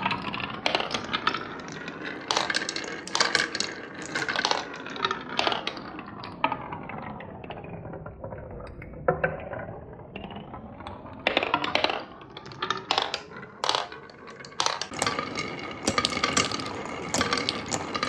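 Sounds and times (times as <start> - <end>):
marbles rolling on wooden track: 0.0 - 18.0.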